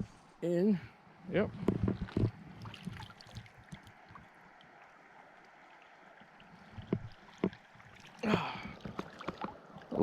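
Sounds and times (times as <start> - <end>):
stream water rushing: 2.3 - 10.0.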